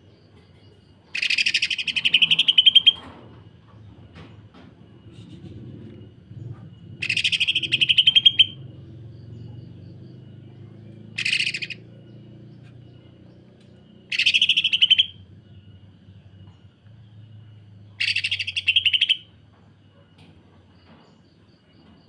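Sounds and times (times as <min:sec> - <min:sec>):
bird rattling calls: 0:01.1 - 0:03.1, 0:06.9 - 0:08.6, 0:11.1 - 0:12.0, 0:14.0 - 0:15.2, 0:18.0 - 0:19.3.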